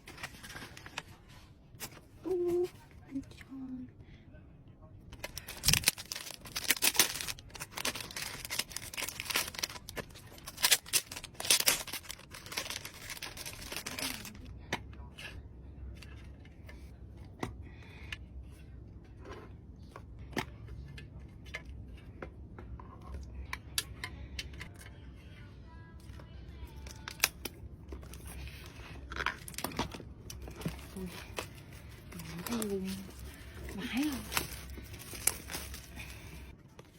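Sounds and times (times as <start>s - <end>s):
packaging tearing and crinkling: 5.2s - 14.5s, 26.8s - 36.5s.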